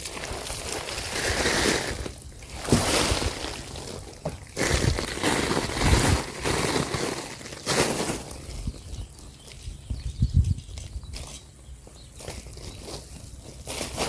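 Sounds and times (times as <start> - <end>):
soil spilling onto a tarp: 0.0 - 8.8, 12.3 - 14.0.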